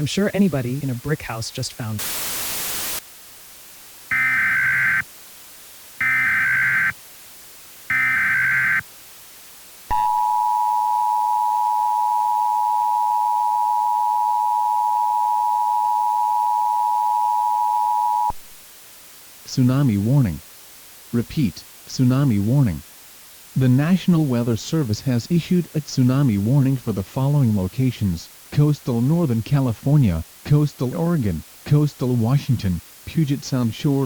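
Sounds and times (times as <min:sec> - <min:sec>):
burst of static: 0:01.6 - 0:03.2
two-tone attention signal: 0:04.1 - 0:05.0, 0:06.0 - 0:06.9, 0:07.9 - 0:08.8, 0:09.9 - 0:18.4
buzzy data bursts: 0:04.1 - 0:05.1, 0:06.0 - 0:07.0, 0:07.9 - 0:08.8.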